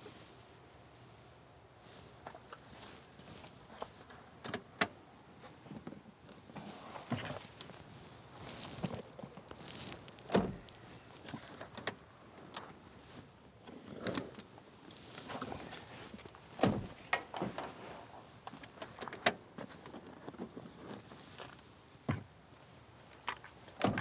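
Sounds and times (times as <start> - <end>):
light rustling: 6.5 - 13.3.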